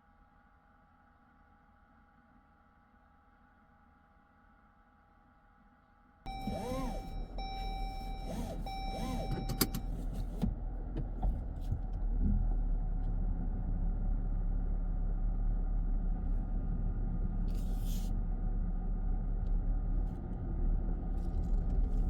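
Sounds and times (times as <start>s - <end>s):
car engine humming: 6.3s - 22.0s.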